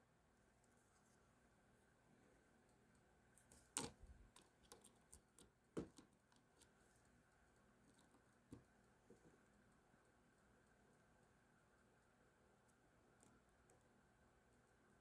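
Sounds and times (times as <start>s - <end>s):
small clicks and taps of screwdriver parts: 2.7s - 6.8s.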